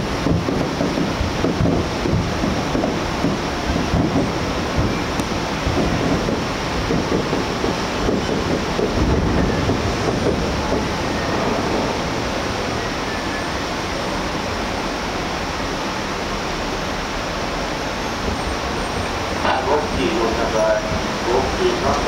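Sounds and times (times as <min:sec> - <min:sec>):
fireworks bursting and crackling: 0:00.1 - 0:10.8.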